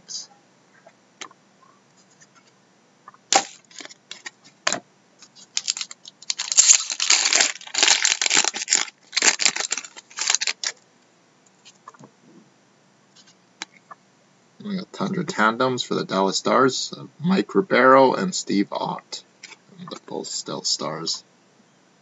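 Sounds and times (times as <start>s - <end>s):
foil wrapper tearing and crinkling: 3.4s - 4.3s, 5.3s - 10.8s.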